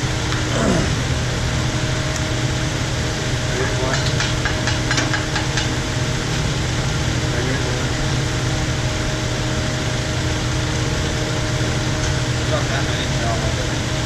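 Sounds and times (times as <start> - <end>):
shop fan droning: 0.0 - 14.0.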